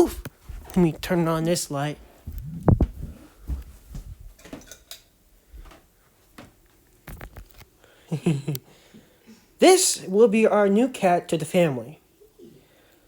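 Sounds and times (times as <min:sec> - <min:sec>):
objects knocking and rustling: 0:02.3 - 0:05.0.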